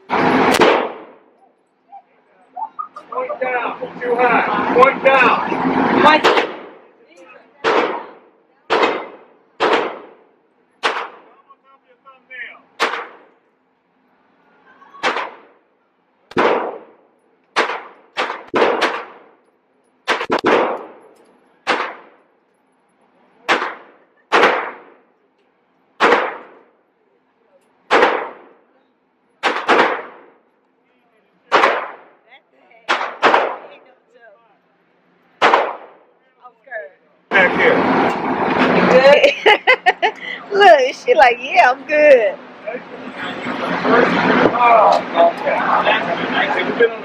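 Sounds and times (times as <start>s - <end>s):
gunshots with echo: 0.1s - 1.3s, 6.1s - 6.8s, 7.6s - 10.2s, 10.8s - 11.3s, 12.8s - 13.4s, 15.0s - 15.6s, 16.3s - 17.0s, 17.6s - 19.4s, 20.1s - 22.2s, 23.5s - 25.0s, 26.0s - 26.7s, 27.9s - 28.6s, 29.4s - 30.4s, 31.5s - 32.2s, 32.9s - 33.8s, 35.4s - 36.0s.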